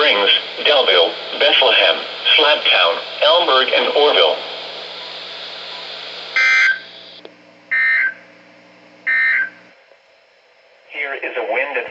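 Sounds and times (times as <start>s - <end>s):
radio hiss and hum: 0.0s - 11.9s
digital data tone bursts: 6.4s - 7.1s, 9.1s - 9.6s.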